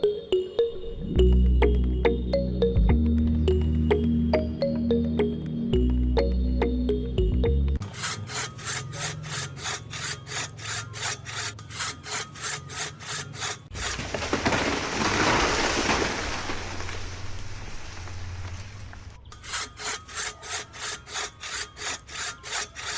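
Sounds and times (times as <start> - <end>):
music: 0.0 - 7.8
saw cutting wood: 7.8 - 14.2, 19.3 - 22.9.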